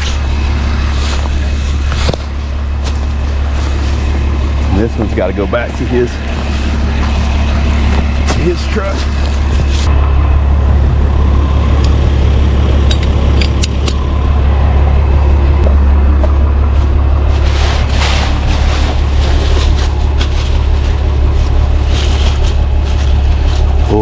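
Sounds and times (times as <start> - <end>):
rustling and scraping: 0.0 - 9.9, 15.8 - 24.0
truck engine humming: 0.0 - 24.0.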